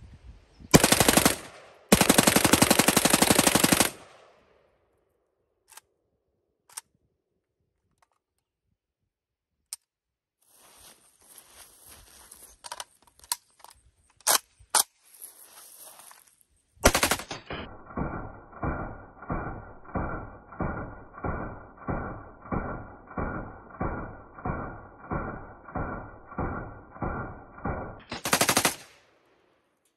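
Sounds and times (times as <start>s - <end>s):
slowed machine-gun fire: 0.7s - 4.2s, 16.8s - 28.9s.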